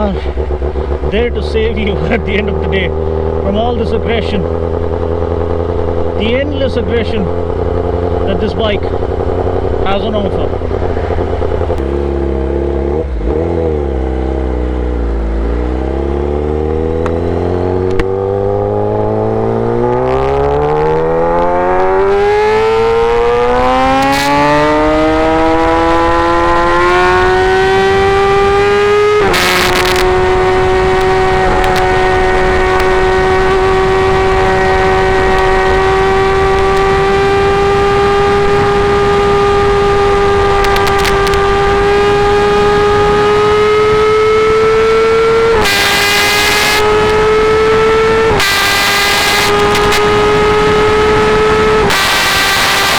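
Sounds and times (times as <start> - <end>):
motorcycle engine revving: 0.0 - 52.9
gear shift click: 40.6 - 41.5.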